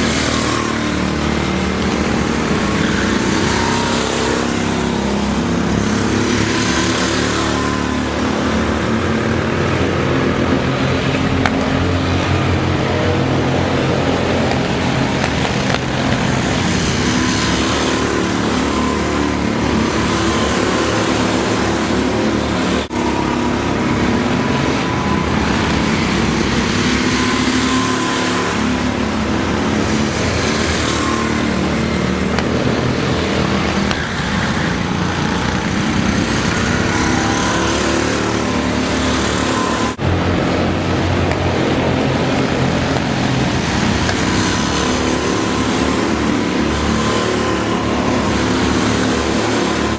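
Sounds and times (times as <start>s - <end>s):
go-kart engines racing: 0.0s - 49.9s.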